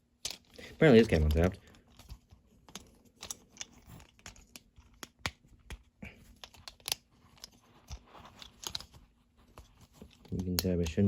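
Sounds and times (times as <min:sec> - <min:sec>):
plastic toy parts clicking: 0:00.2 - 0:09.0.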